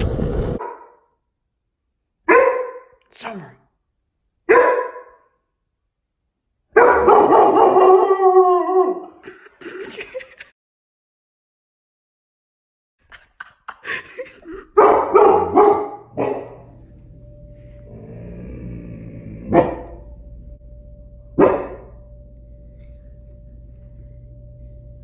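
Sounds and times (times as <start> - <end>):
puppy barking: 0.6 - 1.1, 2.3 - 3.0, 4.5 - 5.3, 6.7 - 8.1, 14.6 - 16.7, 19.5 - 20.0, 21.4 - 21.9
steady low hum: 13.8 - 25.0.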